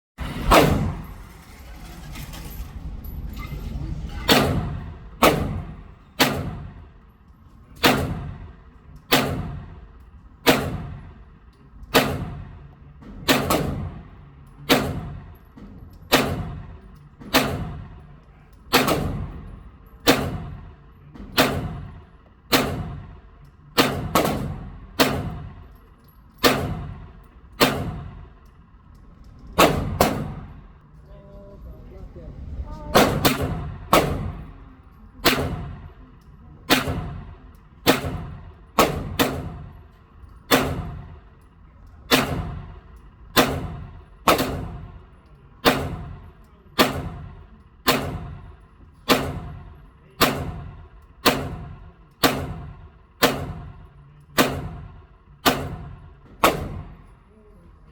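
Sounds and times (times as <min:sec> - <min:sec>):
pistol shots indoors: 0:04.3 - 0:07.0, 0:07.7 - 0:11.2, 0:11.9 - 0:12.6, 0:13.2 - 0:15.4, 0:16.0 - 0:18.0, 0:18.7 - 0:25.8, 0:26.4 - 0:28.9, 0:29.6 - 0:30.6, 0:33.0 - 0:34.6, 0:35.2 - 0:41.5, 0:42.1 - 0:57.1.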